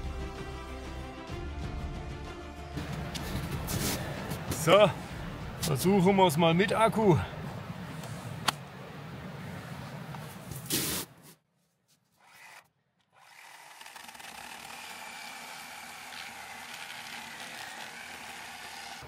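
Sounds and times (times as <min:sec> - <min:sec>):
chainsaw cutting wood: 0:12.2 - 0:19.0.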